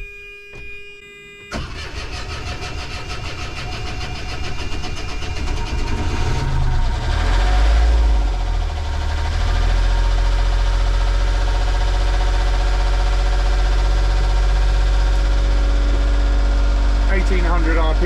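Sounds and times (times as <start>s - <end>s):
alarm buzzer: 0.0s - 2.2s
boat engine cranking and starting: 1.5s - 6.8s.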